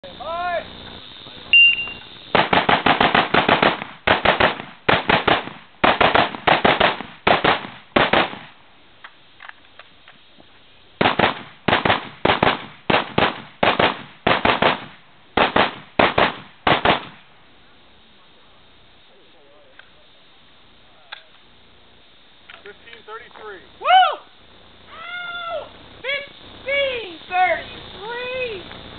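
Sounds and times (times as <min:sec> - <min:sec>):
rifle shots: 0:02.3 - 0:08.6, 0:11.0 - 0:17.2
faint clicks: 0:21.0 - 0:21.5.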